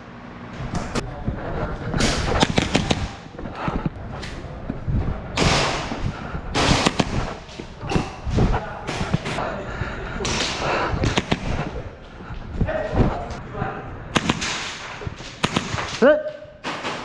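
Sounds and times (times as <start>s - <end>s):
airsoft guns firing: 2.0s - 3.4s, 6.6s - 8.2s, 10.2s - 11.9s, 14.1s - 17.0s.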